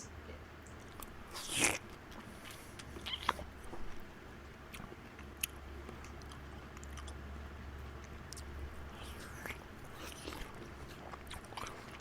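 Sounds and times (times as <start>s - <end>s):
steady low hum: 0.0s - 12.0s
chewing and slurping noodles: 8.0s - 12.0s.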